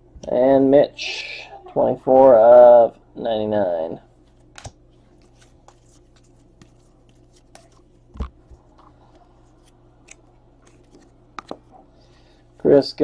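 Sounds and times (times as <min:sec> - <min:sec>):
faint steady hum: 0:00.0 - 0:13.0
cards clicking and sliding: 0:09.1 - 0:11.6.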